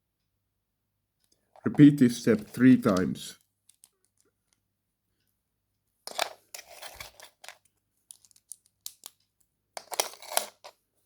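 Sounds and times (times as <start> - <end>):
plastic bricks clicking together: 6.1 - 9.2.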